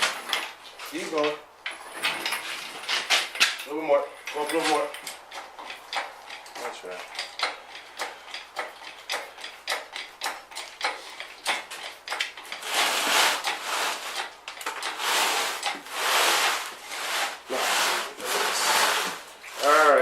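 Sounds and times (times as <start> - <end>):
irregular clicking and knocking: 0.0 - 17.4
rough scraping: 12.5 - 20.0.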